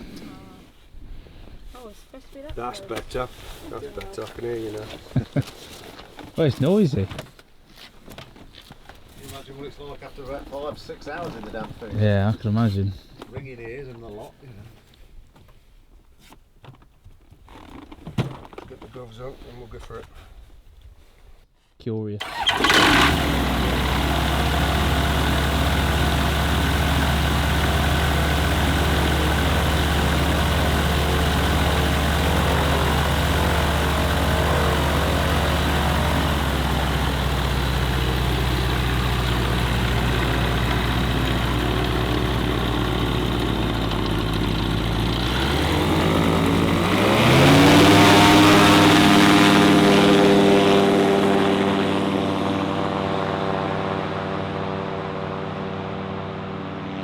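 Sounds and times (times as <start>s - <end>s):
microlight engine and propeller: 22.2s - 57.0s.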